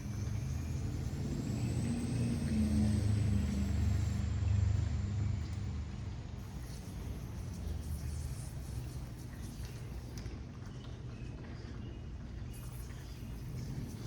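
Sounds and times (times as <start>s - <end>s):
faint high whine: 0.0s - 4.4s.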